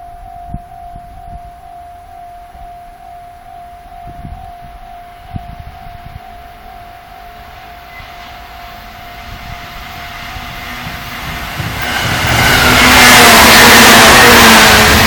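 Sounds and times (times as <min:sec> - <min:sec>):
train wheels on rails: 0:05.2 - 0:15.0.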